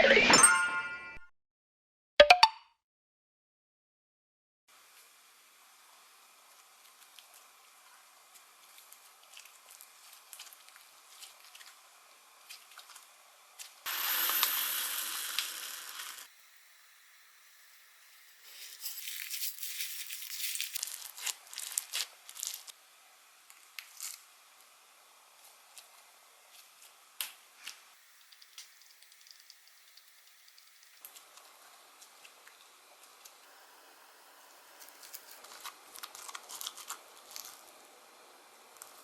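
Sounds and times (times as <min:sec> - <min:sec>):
crinkly slime crackles: 0:06.5 - 0:13.8, 0:18.4 - 0:22.7, 0:23.5 - 0:24.4, 0:34.8 - 0:37.9
slime tearing and crackling: 0:18.8 - 0:22.7, 0:35.0 - 0:37.8.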